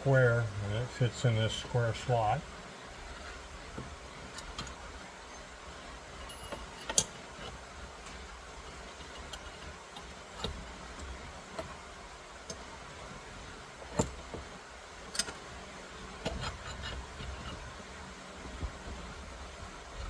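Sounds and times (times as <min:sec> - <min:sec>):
steady background hum: 0:00.0 - 0:20.0
metal clicks and clinks: 0:06.2 - 0:07.2, 0:15.1 - 0:15.4.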